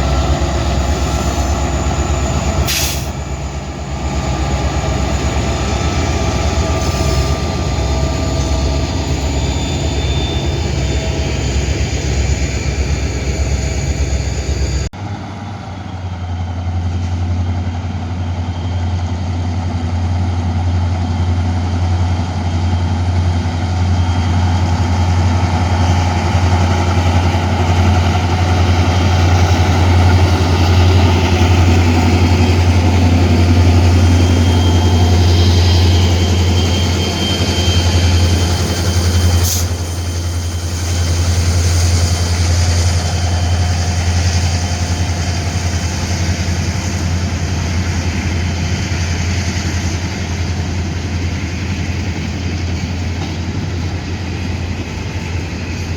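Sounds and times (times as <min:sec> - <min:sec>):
locomotive engine running: 0:00.0 - 0:55.9.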